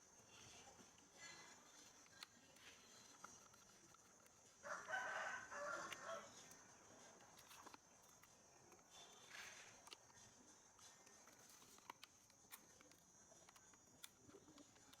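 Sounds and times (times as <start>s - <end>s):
rooster crowing: 4.6s - 6.5s.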